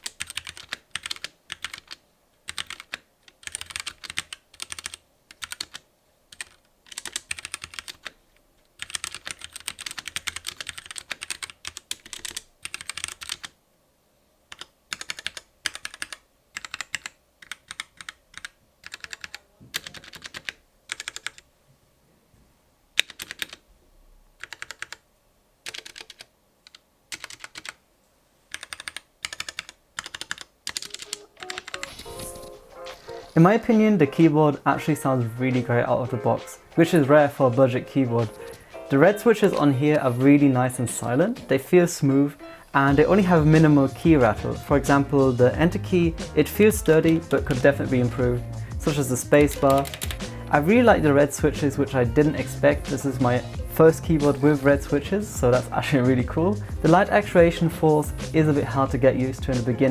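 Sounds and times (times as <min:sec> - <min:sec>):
mechanical keyboard typing: 0:00.0 - 0:08.2, 0:08.8 - 0:13.6, 0:14.5 - 0:21.4, 0:23.0 - 0:23.6, 0:24.4 - 0:25.0, 0:25.6 - 0:27.8, 0:28.5 - 0:33.4, 0:46.6 - 0:50.3.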